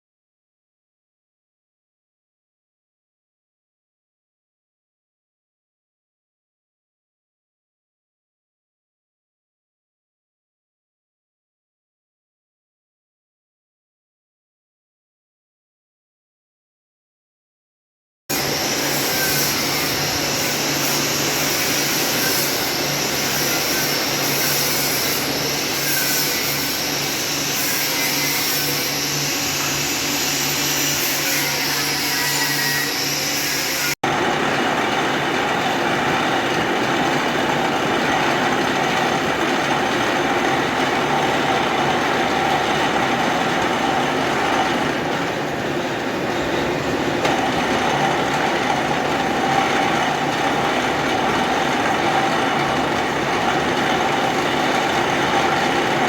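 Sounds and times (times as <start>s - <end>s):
high squeals: 18.3s - 34.0s
lathe cutting steel: 18.3s - 56.0s.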